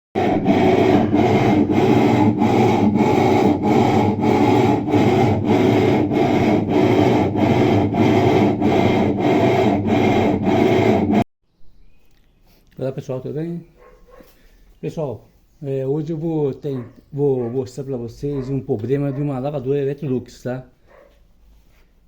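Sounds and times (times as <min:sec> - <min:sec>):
washing machine grinding: 0:00.2 - 0:11.3.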